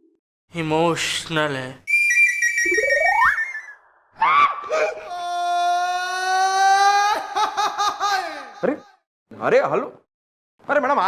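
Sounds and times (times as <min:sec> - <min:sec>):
flute notes: 0:01.9 - 0:03.7.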